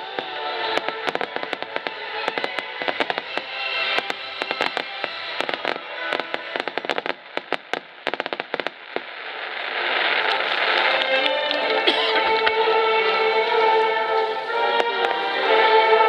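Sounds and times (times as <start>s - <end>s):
fireworks pops and crackles: 0.0s - 12.6s
fireworks hiss: 0.0s - 16.0s.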